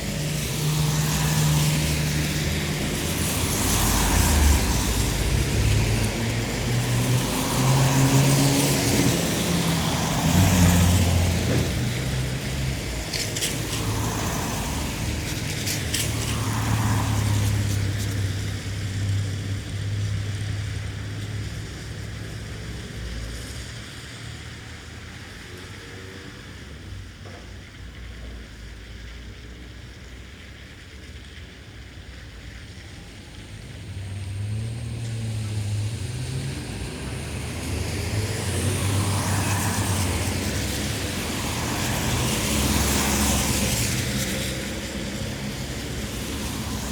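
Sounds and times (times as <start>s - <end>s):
car engine rumble: 0.0s - 24.1s
tyre hiss on wet road: 0.0s - 46.9s.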